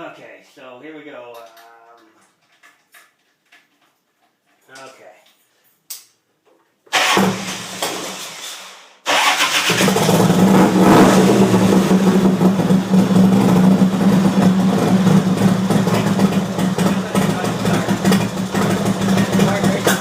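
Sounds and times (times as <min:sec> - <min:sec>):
motorcycle engine starting: 0:06.9 - 0:08.5, 0:09.1 - 0:20.0.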